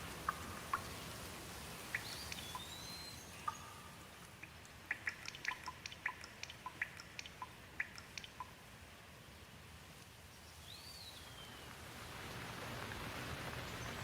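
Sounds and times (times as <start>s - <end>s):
soft hiss of rain: 0.0s - 14.0s
water drops plinking: 1.9s - 8.6s.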